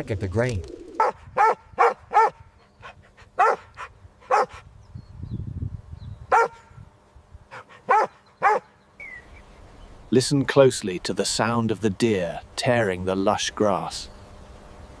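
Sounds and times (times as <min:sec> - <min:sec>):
small dog yapping: 0:01.0 - 0:02.4, 0:03.4 - 0:04.6, 0:06.3 - 0:06.7, 0:07.6 - 0:08.7.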